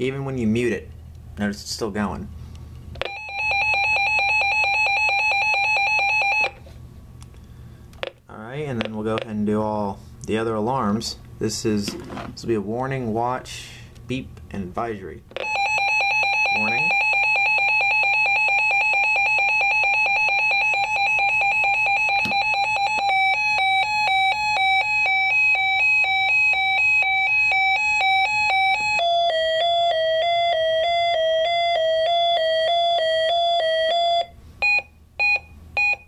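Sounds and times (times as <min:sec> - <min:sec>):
weather radio alarm tones: 0:15.4 - 0:36.0.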